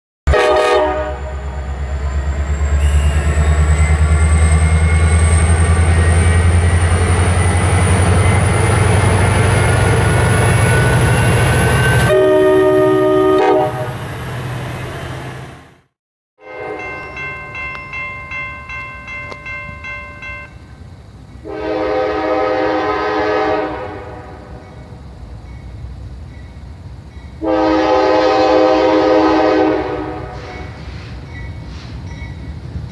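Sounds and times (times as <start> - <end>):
train air horn: 0.3 - 1.7, 2.8 - 3.5, 11.9 - 14.0, 21.4 - 24.6, 27.4 - 31.1
diesel locomotive rumble: 0.3 - 15.9, 16.6 - 32.9.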